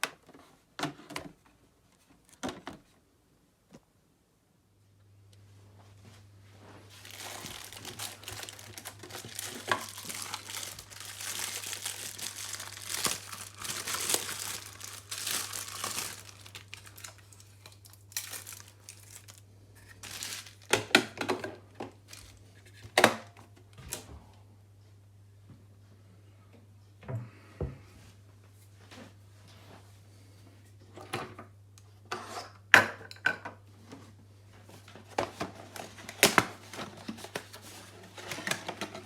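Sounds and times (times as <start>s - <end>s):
packaging crinkling and tearing: 6.9s - 21.2s, 22.0s - 22.4s, 35.3s - 39.0s.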